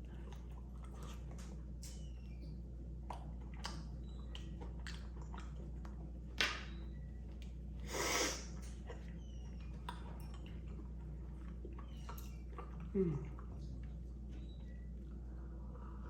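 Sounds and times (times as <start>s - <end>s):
chewing and mouth smacks: 0.0s - 15.2s
hissing breath or slurp: 7.8s - 8.5s.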